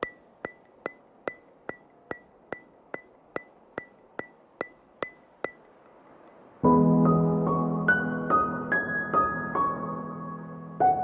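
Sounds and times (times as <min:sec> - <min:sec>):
sharp ringing ticks: 0:00.0 - 0:06.4.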